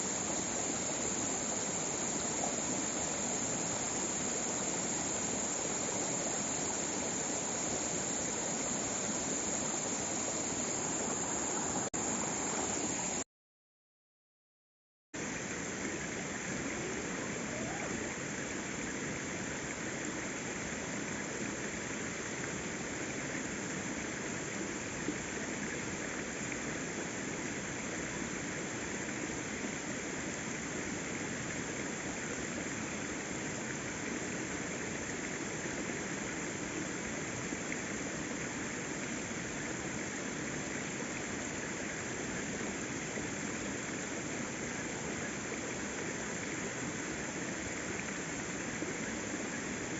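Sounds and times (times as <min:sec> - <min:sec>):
waterfall rushing: 0:00.0 - 0:13.2.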